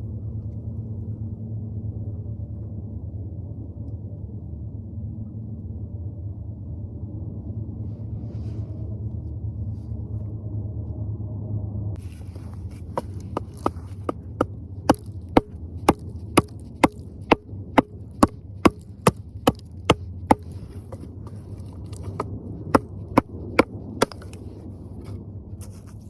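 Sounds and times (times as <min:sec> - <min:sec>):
sharp rhythmic knocks: 0:14.9 - 0:24.4.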